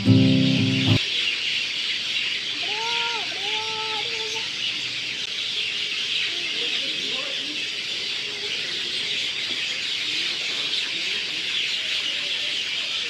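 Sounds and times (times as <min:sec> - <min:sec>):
music: 0:00.0 - 0:01.0
chorus of birds chirping: 0:00.0 - 0:13.0
low arching bird calls: 0:00.0 - 0:13.0.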